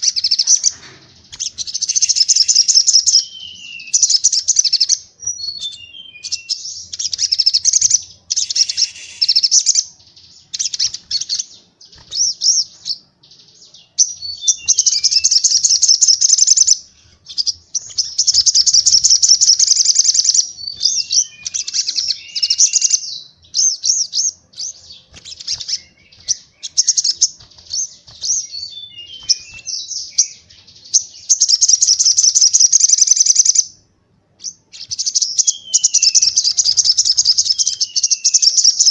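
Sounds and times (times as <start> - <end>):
bird song fast high trills: 1.3 - 13.0, 14.1 - 33.8, 34.5 - 38.9
short descending bird chirps: 8.4 - 9.8.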